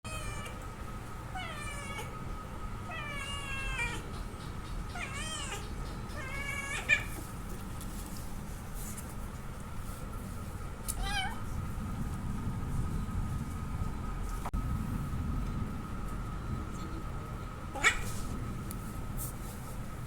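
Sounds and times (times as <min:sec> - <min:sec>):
cats yowling: 0:00.1 - 0:00.6, 0:01.3 - 0:02.2, 0:02.9 - 0:04.1, 0:04.9 - 0:07.2, 0:10.9 - 0:11.4, 0:17.7 - 0:18.2
faint high-pitched hum: 0:10.2 - 0:20.0.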